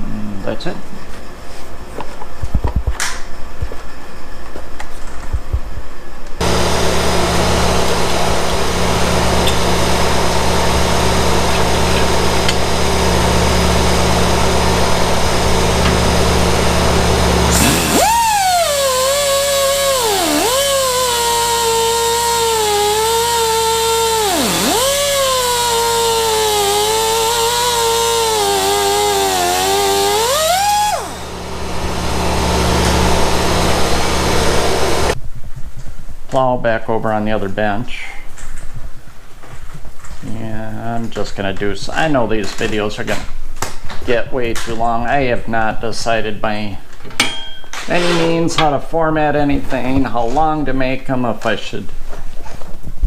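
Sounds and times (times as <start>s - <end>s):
machine motor humming and hissing: 6.4s - 35.2s.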